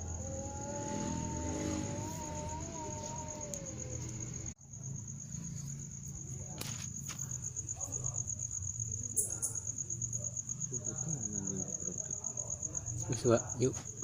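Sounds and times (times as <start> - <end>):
low hum: 0.0 - 4.6
cricket trilling: 0.0 - 14.0.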